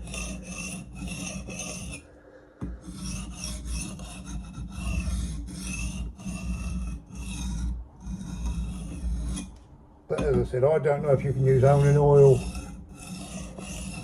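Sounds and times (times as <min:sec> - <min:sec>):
steel blade scraping sharpening stone: 0:00.0 - 0:02.0, 0:02.9 - 0:09.5, 0:11.5 - 0:14.0.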